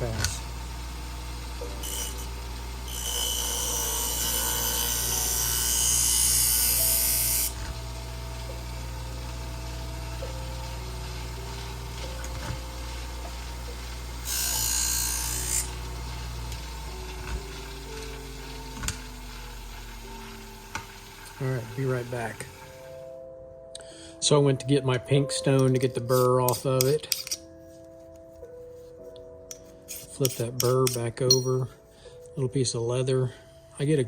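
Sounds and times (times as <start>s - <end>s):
sharpener motor running: 0.2s - 8.2s, 13.9s - 20.0s.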